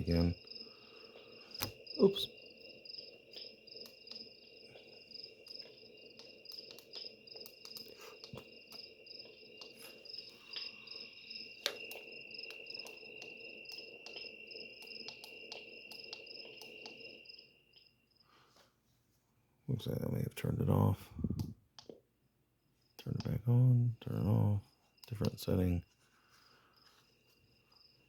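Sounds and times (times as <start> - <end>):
recorded cricket chirping: 0.0 - 28.0
clicks: 1.6 - 1.8, 5.4 - 10.7, 11.6 - 17.0, 25.0 - 25.5.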